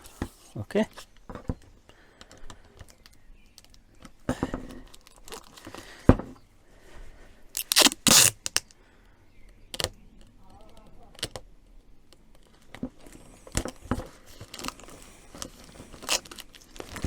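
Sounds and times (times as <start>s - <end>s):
loud rasping noises: 7.6s - 8.6s
rustles of plastic hose parts: 7.6s - 8.7s, 12.4s - 17.0s.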